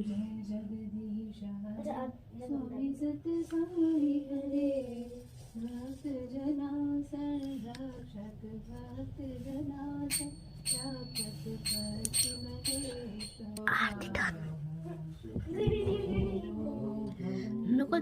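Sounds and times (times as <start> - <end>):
woman singing devotional song: 0.0 - 18.0
small hand bell ringing: 10.1 - 13.6.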